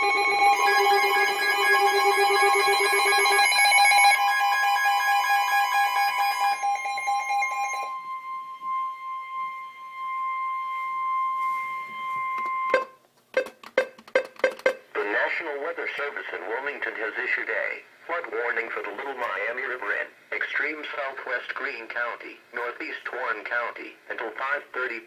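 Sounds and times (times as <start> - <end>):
pulsing electronic alert tones: 0.0 - 14.8
steady alarm tone: 0.0 - 14.8.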